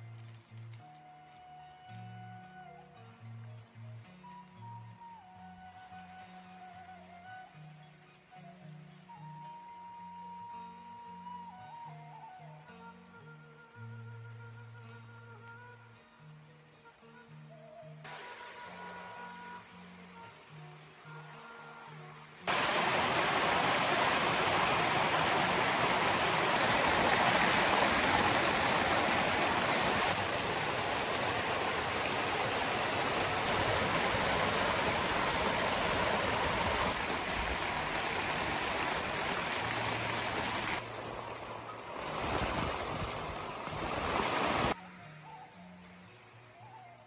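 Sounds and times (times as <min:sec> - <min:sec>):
heavy rain downpour: 0:18.1 - 0:20.3, 0:22.5 - 0:44.8.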